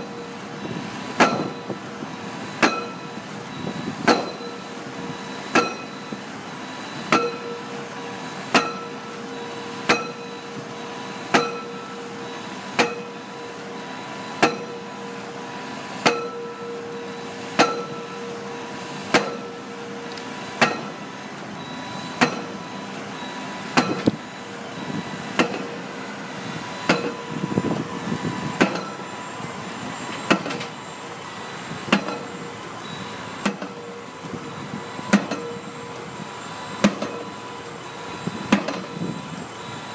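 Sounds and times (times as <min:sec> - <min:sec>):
steady machine noise: 0:00.0 - 0:39.9
pile-driving hammer clanging: 0:01.2 - 0:01.7, 0:02.6 - 0:03.1, 0:04.0 - 0:04.5, 0:05.5 - 0:06.0, 0:07.1 - 0:07.6, 0:08.5 - 0:08.9, 0:09.8 - 0:10.3, 0:11.3 - 0:11.8, 0:12.8 - 0:13.1, 0:14.4 - 0:14.8, 0:16.0 - 0:16.5, 0:17.6 - 0:18.0, 0:19.1 - 0:19.6, 0:20.6 - 0:21.0, 0:22.2 - 0:22.6, 0:23.8 - 0:24.2, 0:25.4 - 0:25.8, 0:26.8 - 0:27.2, 0:28.6 - 0:29.0, 0:30.2 - 0:30.7, 0:31.9 - 0:32.4, 0:35.1 - 0:35.6, 0:36.8 - 0:37.3, 0:38.5 - 0:39.0.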